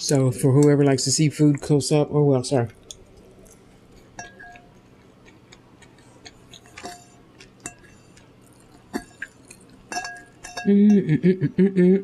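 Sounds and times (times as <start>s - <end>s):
utensil clinking against a dish: 3.4s - 5.4s, 6.2s - 11.1s.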